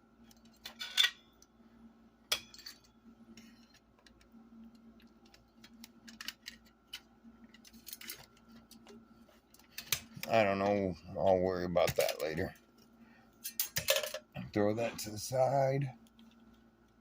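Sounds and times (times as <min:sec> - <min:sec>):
faint steady hum: 0:00.0 - 0:17.0
clicks and clinks of parts: 0:05.0 - 0:10.2.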